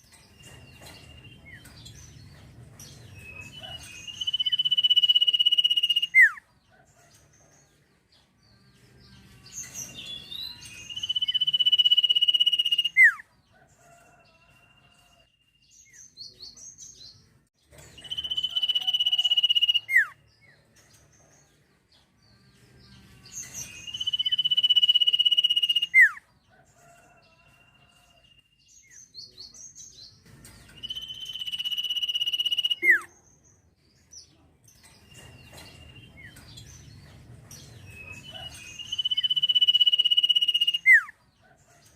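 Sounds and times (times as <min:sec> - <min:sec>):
songbird singing whistled phrases: 0:03.2 - 0:06.4, 0:09.6 - 0:13.2, 0:17.9 - 0:20.2, 0:23.4 - 0:26.2, 0:30.7 - 0:33.1, 0:37.9 - 0:41.1.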